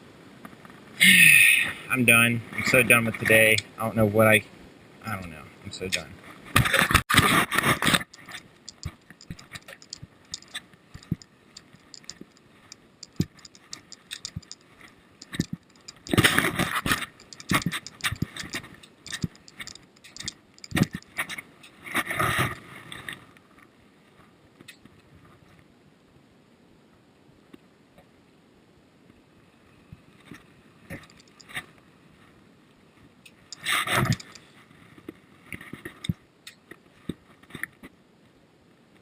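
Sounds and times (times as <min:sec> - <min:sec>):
handling clicks and scrapes: 0:06.5 - 0:23.2, 0:30.2 - 0:31.7, 0:33.3 - 0:34.6, 0:35.5 - 0:37.8.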